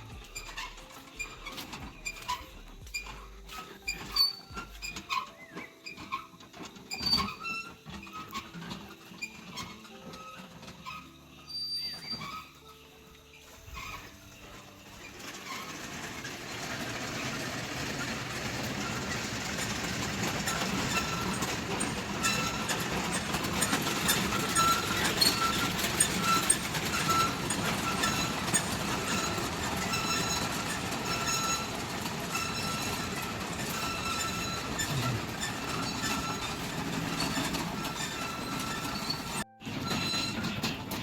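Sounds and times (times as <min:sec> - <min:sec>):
metal prayer wheels rumbling: 0:00.0 - 0:41.0
short high squeaks: 0:00.0 - 0:41.0.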